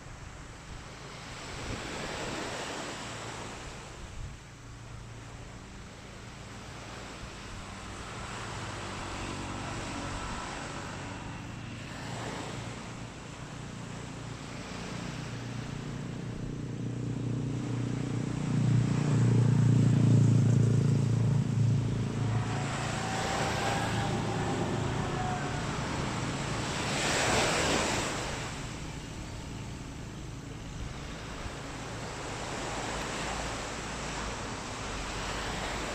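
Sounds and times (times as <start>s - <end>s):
waves washing on beach: 0.0s - 35.9s
motor engine droning past: 6.2s - 35.9s.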